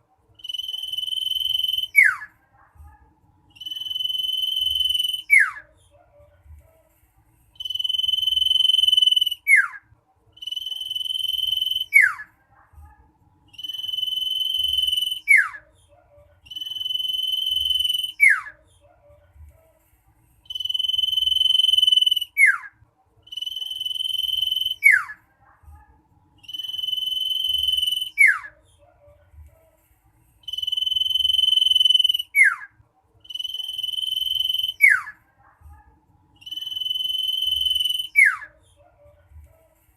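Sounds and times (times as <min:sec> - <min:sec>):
bird whistling song: 0:00.4 - 0:02.3, 0:03.6 - 0:05.7, 0:07.6 - 0:09.8, 0:10.4 - 0:12.2, 0:13.5 - 0:15.6, 0:16.5 - 0:18.6, 0:20.4 - 0:22.7, 0:23.3 - 0:25.2, 0:26.4 - 0:28.6, 0:30.4 - 0:35.2, 0:36.4 - 0:38.5.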